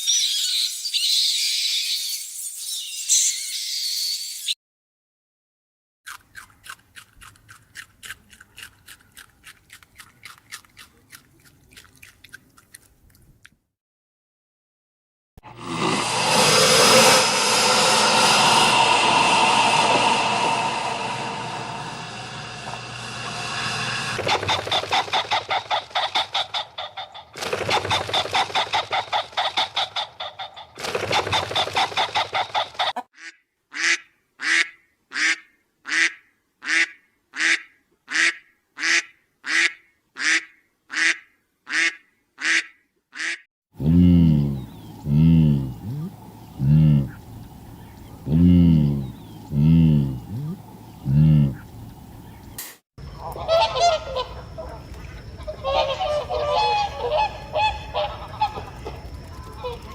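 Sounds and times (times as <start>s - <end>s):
deeper animal call: 15.5s - 28.2s, 43.8s - 47.3s, 48.0s - 51.9s, 53.1s - 59.9s
waterfowl calling: 16.9s - 43.4s, 53.1s - 59.9s.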